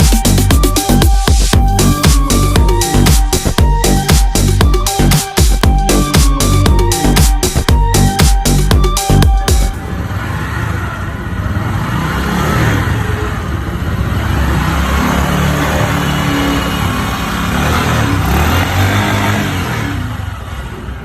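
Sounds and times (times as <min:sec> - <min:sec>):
motorcycle engine running: 0:16.7 - 0:20.9.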